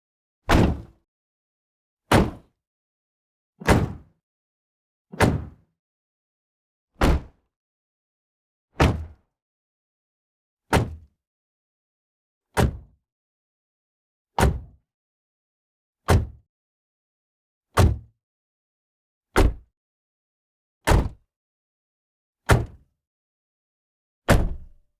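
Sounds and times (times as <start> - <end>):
car door slamming: 24.3 - 24.8.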